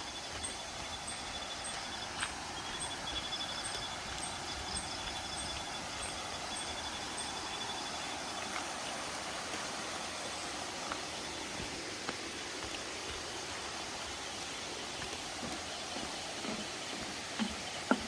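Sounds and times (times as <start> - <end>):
insect-like trill: 0.0 - 8.9
background hiss: 0.0 - 18.0.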